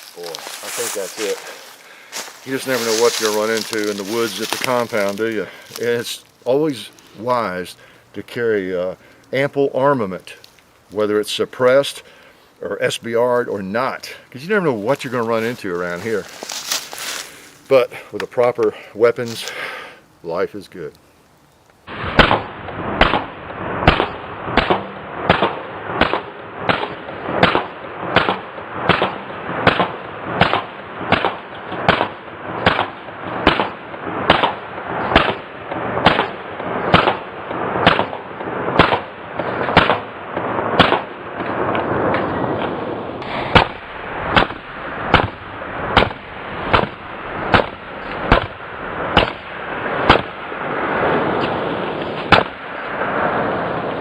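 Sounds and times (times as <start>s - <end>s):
steady hiss: 0.0s - 22.0s
sharp bangs: 21.9s - 54.0s.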